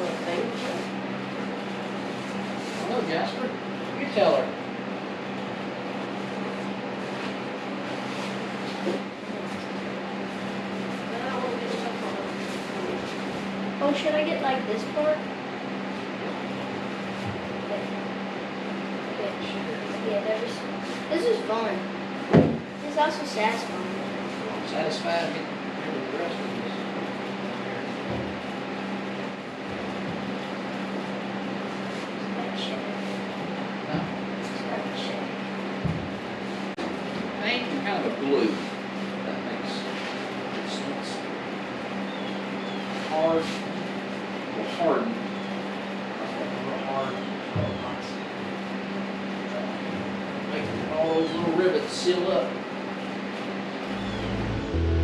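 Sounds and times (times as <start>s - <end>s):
fan humming: 0.0s - 55.0s
machine hum: 53.7s - 55.0s.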